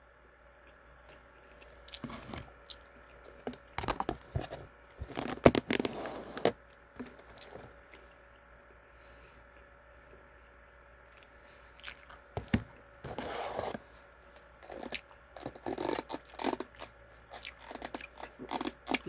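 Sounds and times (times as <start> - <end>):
packaging crinkling: 3.5 - 7.6
packaging scrapes and rustles: 3.8 - 7.7, 12.4 - 13.9.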